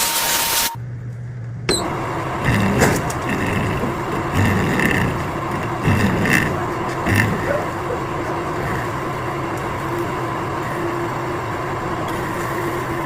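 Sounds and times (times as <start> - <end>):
lathe machine hiss and hum: 1.7 - 13.0.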